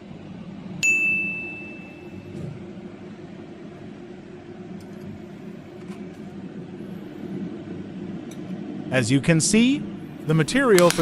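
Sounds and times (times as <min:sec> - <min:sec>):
low machine hum: 0:00.0 - 0:11.0
bell-like ding: 0:00.8 - 0:02.3.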